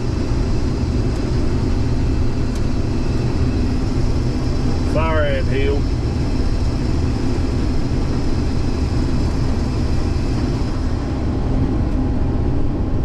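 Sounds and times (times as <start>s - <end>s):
combine harvester low drone: 0.0s - 13.0s
faint high whine: 0.0s - 13.0s.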